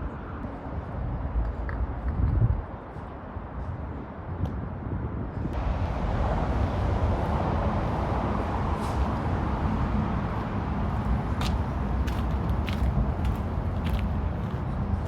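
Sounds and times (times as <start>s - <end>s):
road traffic rumble: 5.4s - 15.0s.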